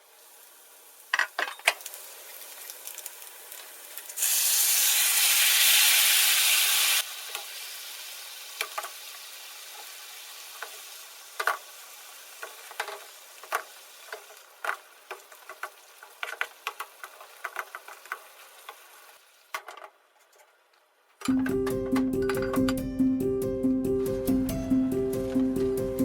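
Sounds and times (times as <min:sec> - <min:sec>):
food sizzling in a pan: 0:00.0 - 0:19.6
loud sizzle: 0:00.0 - 0:19.6.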